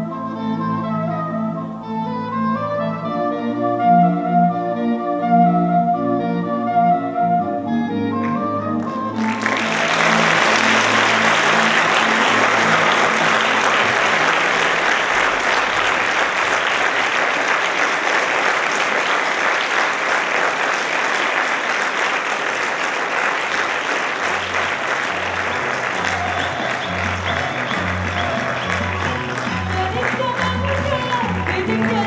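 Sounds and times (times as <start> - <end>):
music playing: 0.0 - 16.6, 24.2 - 32.0
audience applauding: 8.1 - 32.0.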